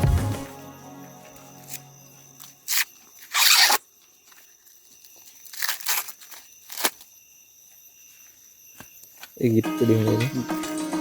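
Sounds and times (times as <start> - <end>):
dry husks tearing and rustling: 2.4 - 7.2.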